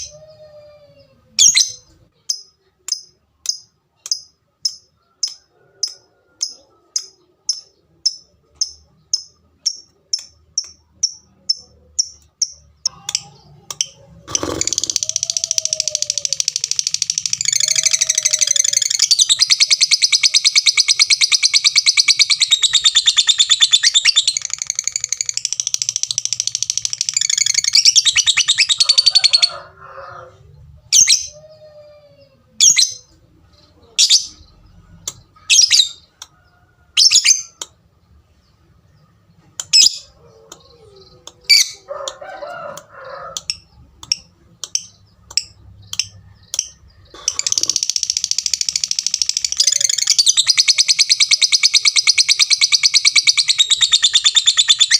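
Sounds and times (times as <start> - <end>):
lovebird rapid chatter: 13.8 - 29.3, 43.5 - 54.9.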